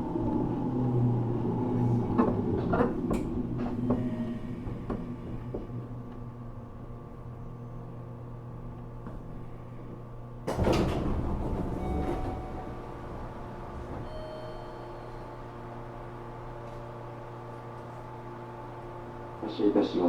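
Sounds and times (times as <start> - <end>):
train equipment humming: 0.0 - 20.0
train sliding door thump: 10.4 - 15.0.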